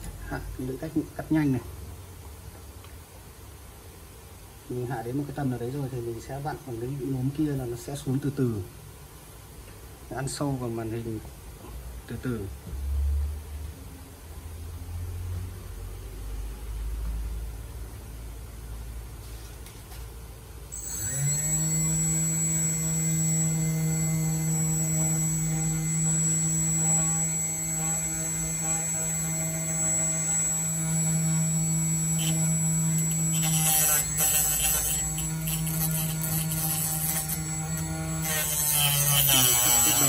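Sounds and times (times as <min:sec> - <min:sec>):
electric motor humming and whining: 0:20.7 - 0:40.0
cutting wire rasping on glass: 0:20.8 - 0:40.0.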